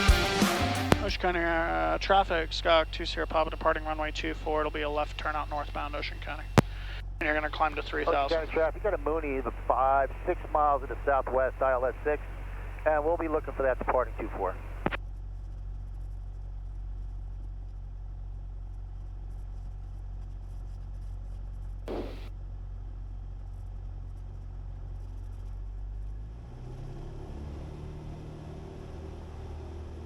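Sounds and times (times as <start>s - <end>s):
piston engine droning: 0.0s - 15.0s, 21.9s - 22.3s.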